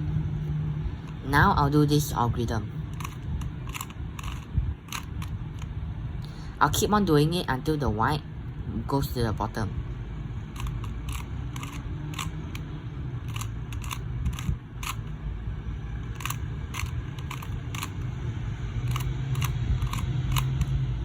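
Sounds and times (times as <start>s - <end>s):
speed cube plastic clicks: 2.9s - 5.7s, 10.6s - 15.2s, 16.0s - 18.2s, 18.8s - 20.8s.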